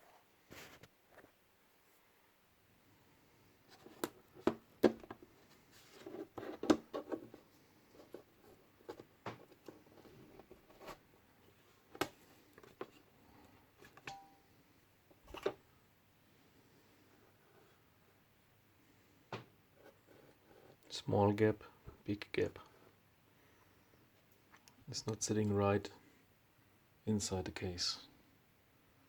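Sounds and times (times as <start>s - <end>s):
plastic parts clicking and knocking: 3.8s - 5.3s, 6.1s - 7.4s.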